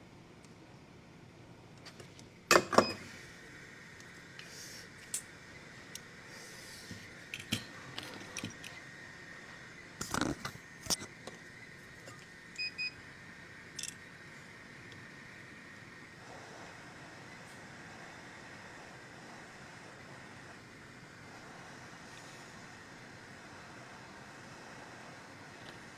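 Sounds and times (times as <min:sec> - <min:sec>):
faint high hum: 0:00.0 - 0:25.9
metallic clicks of tools handled: 0:13.8 - 0:14.0.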